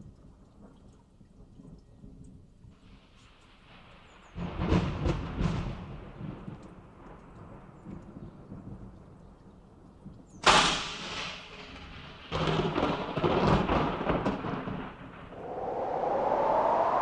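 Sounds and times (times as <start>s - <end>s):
siren rising in pitch: 15.4s - 17.0s.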